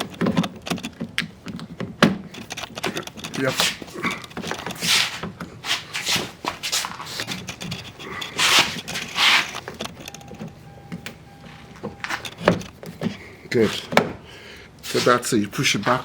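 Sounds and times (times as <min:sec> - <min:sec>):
hands scraping door handle parts: 0:00.0 - 0:14.2.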